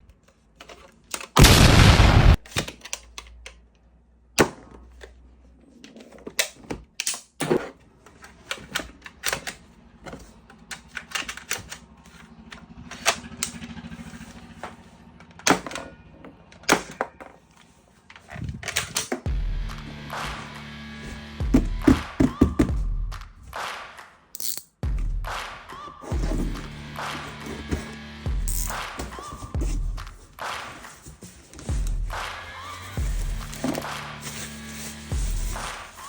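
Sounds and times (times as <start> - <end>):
plastic toy gun parts clicking: 0.1 - 1.4, 2.4 - 5.2, 5.8 - 7.3, 8.1 - 13.6, 24.4 - 24.7
loud rushing burst: 1.4 - 2.4.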